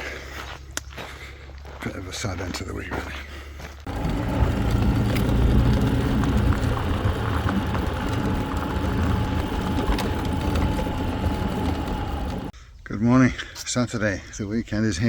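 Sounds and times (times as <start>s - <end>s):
vehicle engine running: 3.9s - 12.6s.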